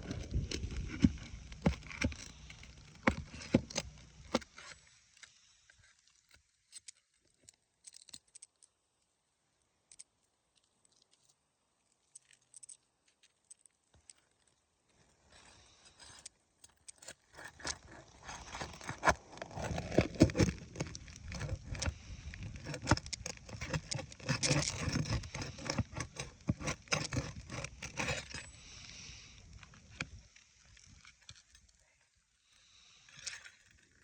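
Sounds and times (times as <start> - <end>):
roof shingles scraping and clicking: 0.0 - 4.8, 17.0 - 29.3.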